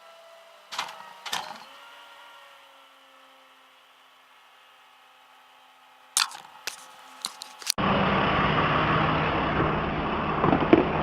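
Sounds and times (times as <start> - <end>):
truck engine running: 6.2 - 11.0.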